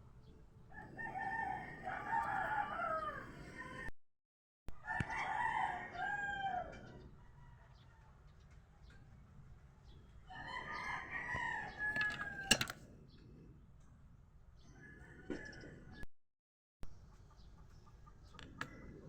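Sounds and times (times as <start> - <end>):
rooster crowing: 0.7 - 3.9, 4.8 - 6.8, 10.3 - 12.7.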